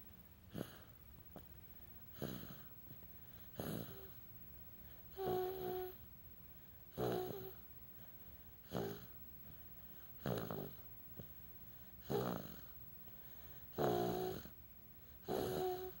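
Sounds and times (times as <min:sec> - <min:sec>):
baby snoring: 0:00.5 - 0:00.9, 0:02.1 - 0:02.7, 0:03.5 - 0:04.2, 0:05.1 - 0:06.0, 0:06.9 - 0:07.6, 0:08.6 - 0:09.1, 0:10.2 - 0:10.8, 0:12.0 - 0:12.7, 0:13.7 - 0:14.6, 0:15.2 - 0:16.0.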